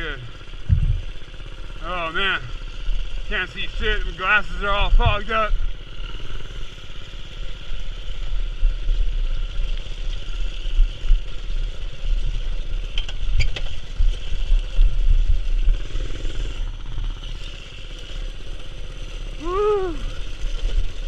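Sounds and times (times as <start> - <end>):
mini-bike engine rumbling: 0.0 - 21.0
sharp knocks: 0.7 - 1.2.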